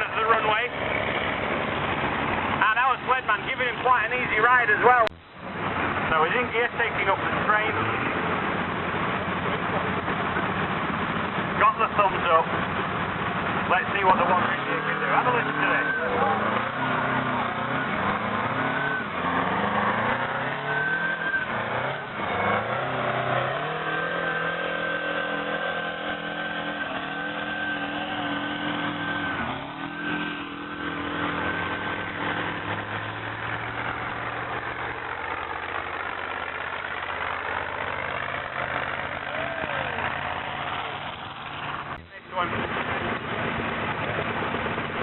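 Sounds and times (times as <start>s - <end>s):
tractor diesel engine under load: 0.0s - 45.0s.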